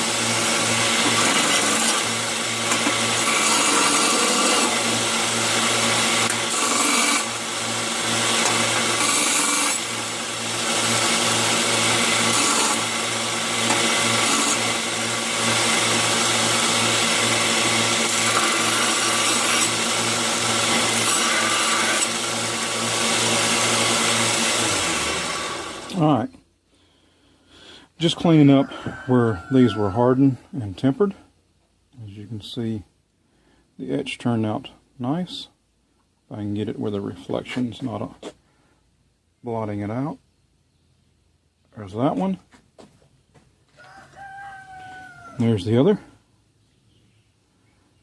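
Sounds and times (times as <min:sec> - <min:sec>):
power tool working steel: 0:00.0 - 0:26.2.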